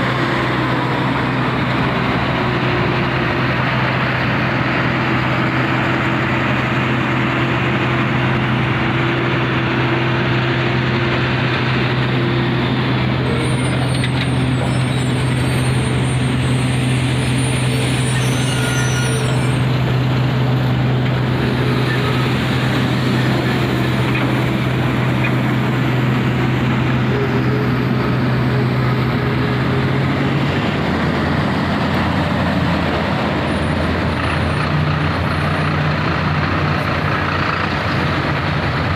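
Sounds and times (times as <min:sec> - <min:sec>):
heavy diesel machinery running: 0:00.0 - 0:38.9
thin high squeal: 0:13.3 - 0:19.7.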